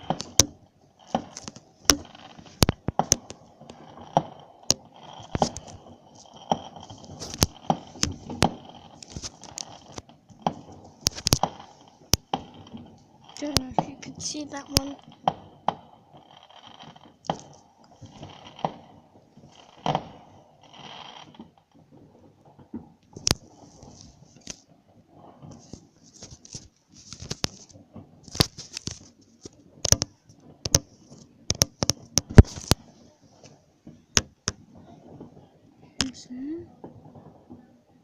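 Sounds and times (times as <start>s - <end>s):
fireworks bangs: 0.0s - 38.0s
fireworks crackling: 0.0s - 38.0s.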